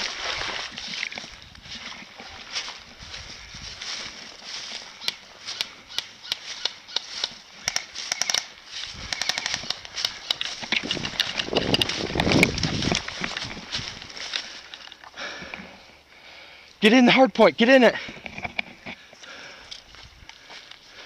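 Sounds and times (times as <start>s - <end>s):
rustling: 6.4s - 15.0s.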